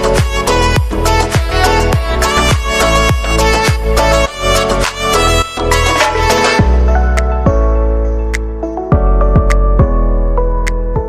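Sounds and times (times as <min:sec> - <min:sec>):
music with fast beat: 0:00.0 - 0:07.6
bowed string melody: 0:00.0 - 0:07.9.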